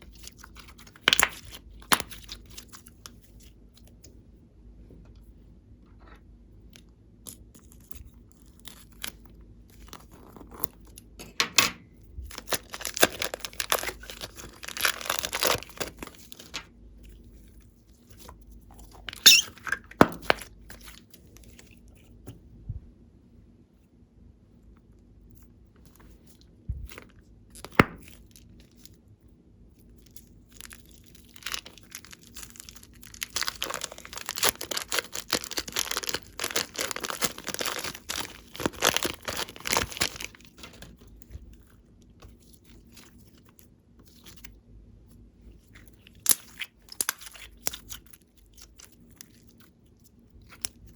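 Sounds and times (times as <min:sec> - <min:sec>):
slime crackling and popping: 0:12.3 - 0:16.6, 0:30.1 - 0:41.0, 0:46.1 - 0:49.5.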